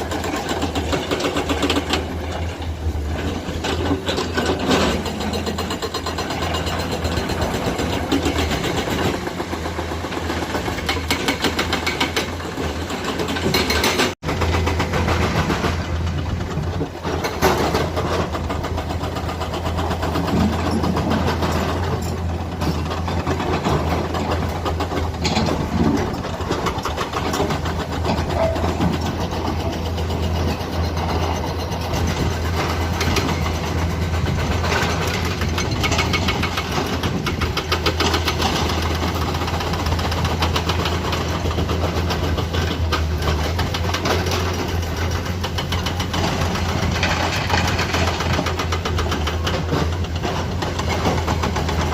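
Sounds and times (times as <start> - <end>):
excavator diesel engine running: 0.0 - 51.9
short knocks and clatter: 10.4 - 51.9.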